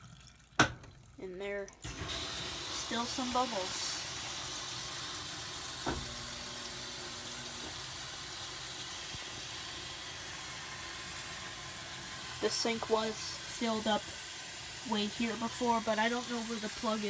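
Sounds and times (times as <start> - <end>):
drain water pouring into sink: 0.0 - 17.0
single knock: 5.8 - 6.2.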